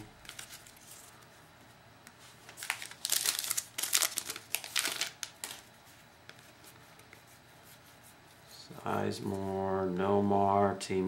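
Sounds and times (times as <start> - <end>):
foil wrapper crinkling: 0.2 - 1.0, 2.4 - 5.7.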